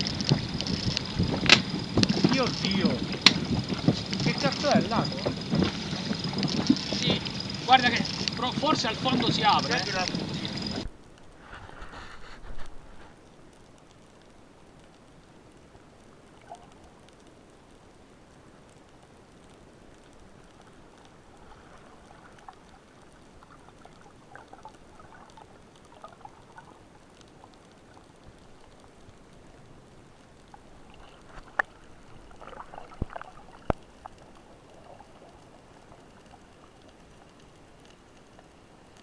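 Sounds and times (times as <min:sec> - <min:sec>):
sharp clicks and knocks: 0:00.0 - 0:10.9
underwater crackling and ticking: 0:00.0 - 0:39.0.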